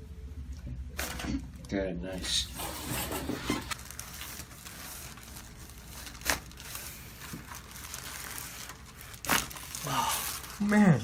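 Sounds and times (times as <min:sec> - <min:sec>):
rustling and crinkling on table: 0:02.4 - 0:11.0.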